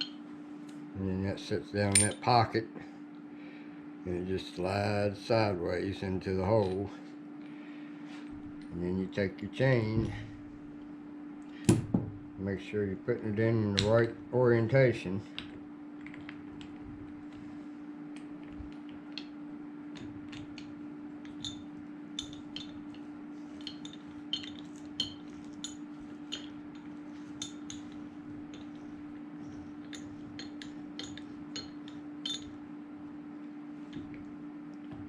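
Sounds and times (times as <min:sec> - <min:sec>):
steady low hum: 0:00.0 - 0:35.0
steel chain clinking: 0:29.8 - 0:32.5.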